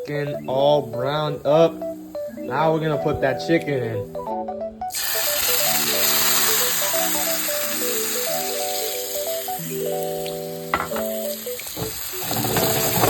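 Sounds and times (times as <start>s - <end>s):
background music with melody: 0.0s - 13.0s
chicken sizzling in hot oil: 4.9s - 13.0s.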